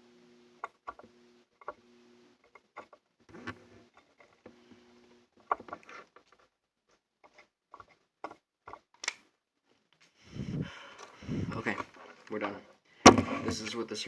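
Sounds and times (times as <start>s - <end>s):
clicks of small tools and wires: 7.2s - 9.3s
faint low hum: 10.3s - 14.0s.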